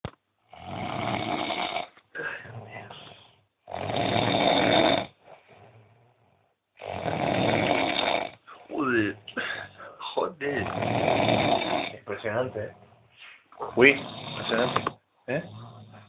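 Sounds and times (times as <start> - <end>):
person snoring heavily: 0.5 - 5.8, 6.8 - 8.6, 9.4 - 12.0, 13.7 - 16.0.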